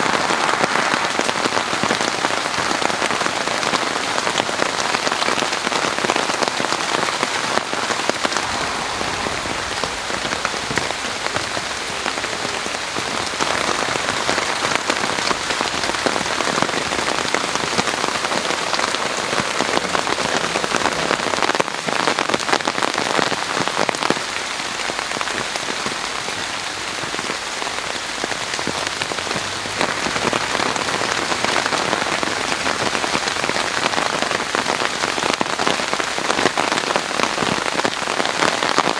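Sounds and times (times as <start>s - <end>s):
rain patter: 0.0s - 38.9s.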